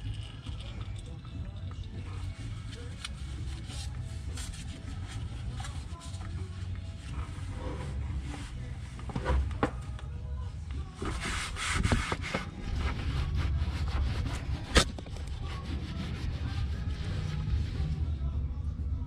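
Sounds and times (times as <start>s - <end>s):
rag rubbing and wiping: 2.2s - 9.7s, 11.0s - 18.0s.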